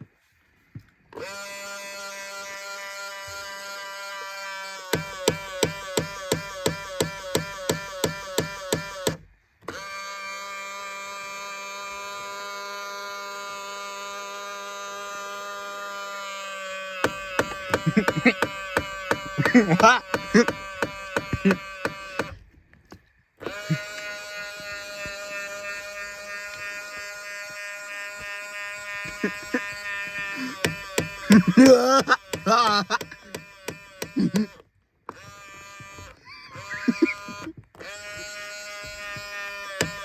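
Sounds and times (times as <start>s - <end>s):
mirror motor buzzing: 1.0s - 40.0s
rapid irregular clicking: 17.0s - 23.1s, 30.5s - 35.3s.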